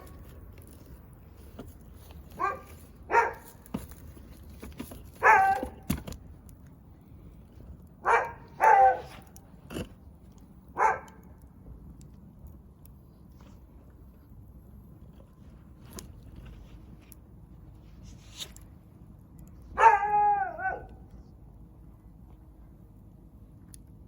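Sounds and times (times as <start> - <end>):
dog barking: 2.4 - 3.5, 5.2 - 5.8, 8.0 - 9.2, 10.8 - 11.2, 19.8 - 21.0.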